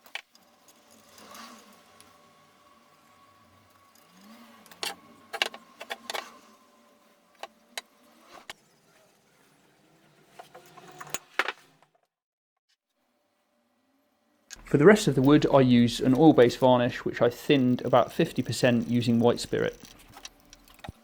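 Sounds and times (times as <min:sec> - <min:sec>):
small hard objects clicking: 0:14.5 - 0:21.0.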